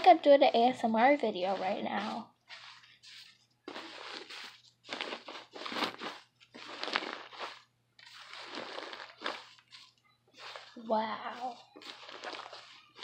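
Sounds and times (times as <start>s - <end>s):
slime squishing: 0.0s - 13.0s.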